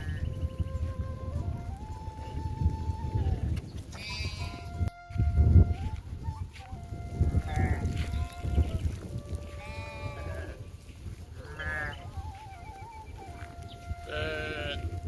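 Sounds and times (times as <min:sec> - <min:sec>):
sheep or goats bleating: 0:04.0 - 0:04.7, 0:09.5 - 0:10.6, 0:11.4 - 0:12.0, 0:14.1 - 0:14.9.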